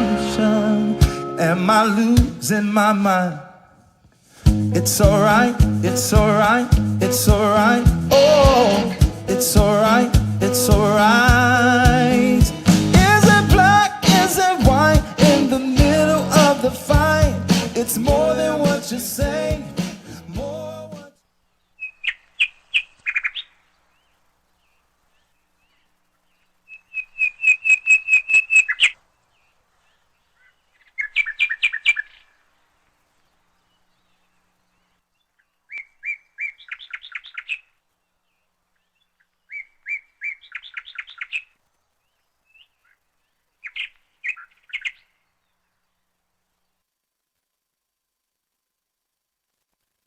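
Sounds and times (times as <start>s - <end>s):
bird song trilled chirps: 21.5s - 32.5s, 33.2s - 46.0s.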